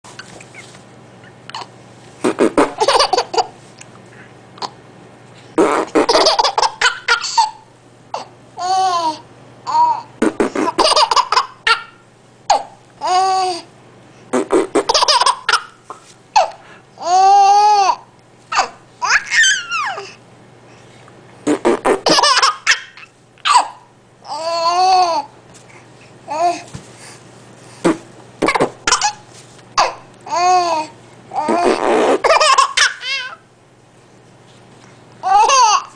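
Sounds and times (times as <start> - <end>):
baby laughing: 2.3 - 3.6, 5.9 - 7.6, 8.2 - 13.6, 14.8 - 20.2, 22.0 - 25.3, 28.4 - 29.2, 29.8 - 33.4, 35.2 - 35.9
high-pitched funny sounds: 18.6 - 20.2.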